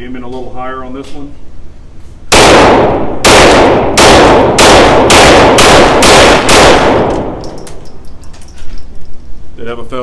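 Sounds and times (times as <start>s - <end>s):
pistol shots with echo: 2.3s - 7.5s.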